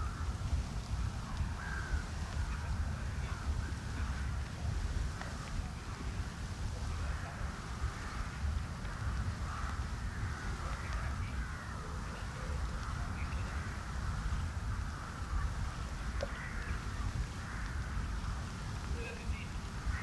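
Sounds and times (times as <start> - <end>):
crows cawing: 1.6 - 2.0, 7.1 - 12.0, 13.4 - 18.3.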